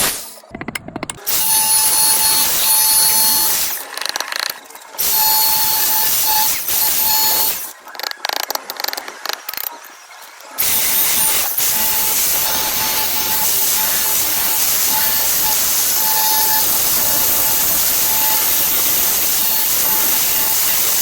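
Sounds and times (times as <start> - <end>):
power tool cutting stone paving: 1.3 - 3.9, 5.0 - 7.7, 10.6 - 21.0.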